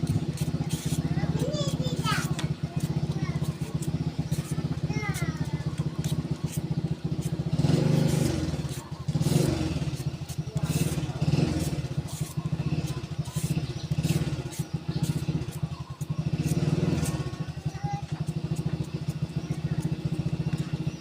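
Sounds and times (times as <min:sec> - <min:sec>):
small engine puttering: 0:00.0 - 0:21.0.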